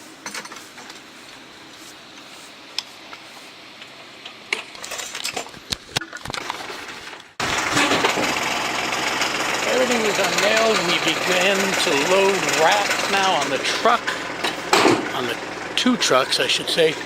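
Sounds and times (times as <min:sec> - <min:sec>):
loud steady noise: 0:07.4 - 0:17.0.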